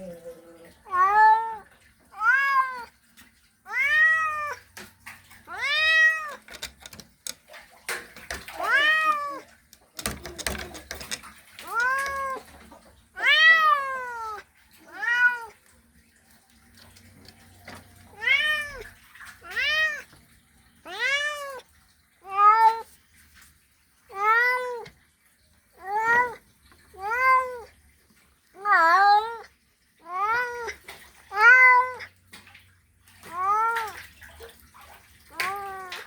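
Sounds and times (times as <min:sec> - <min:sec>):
cat meowing loudly: 0:08.5 - 0:10.2.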